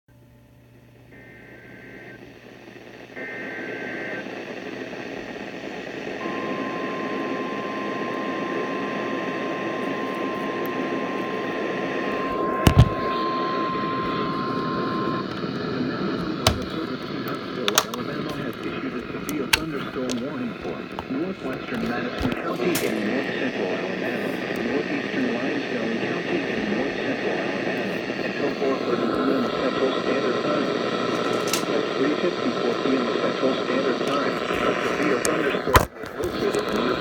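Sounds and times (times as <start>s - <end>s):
steady warning alarm tone: 6.2s - 20.9s.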